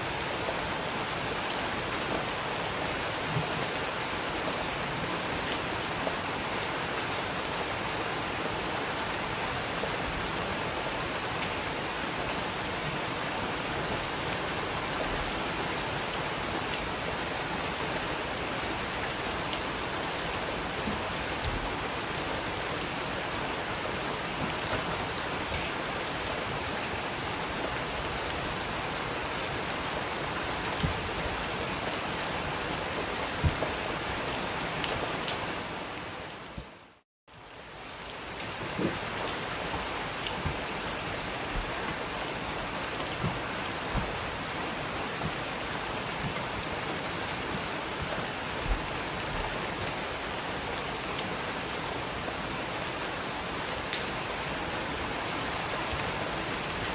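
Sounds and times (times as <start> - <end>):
steady rain falling: 0.0 - 56.9.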